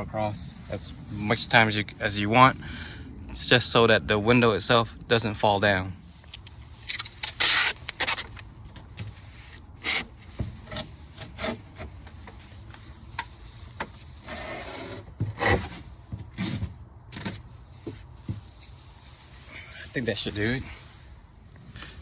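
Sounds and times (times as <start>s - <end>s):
tape ripping and scraping: 6.8s - 19.5s.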